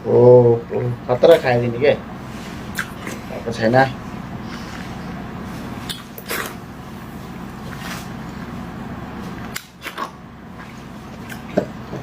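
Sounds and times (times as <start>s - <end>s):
steady low hum: 0.0s - 12.0s
eating clicks and smacks: 2.7s - 3.3s, 9.3s - 12.0s.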